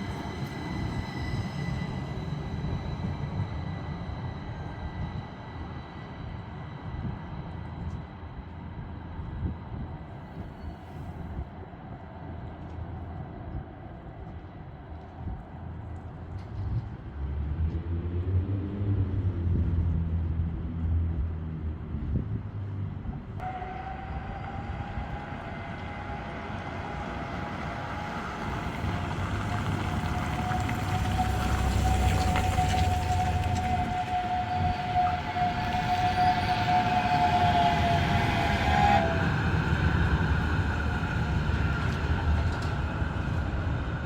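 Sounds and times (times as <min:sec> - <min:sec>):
low vehicle rumble: 0:16.4 - 0:44.0.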